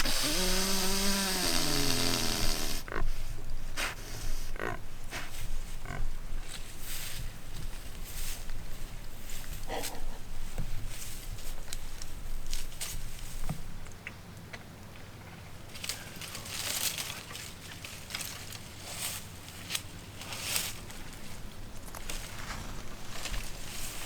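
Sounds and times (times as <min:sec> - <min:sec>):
breathy hissing bursts: 0:00.0 - 0:02.9
dry leaves crackling and rustling: 0:15.7 - 0:24.0.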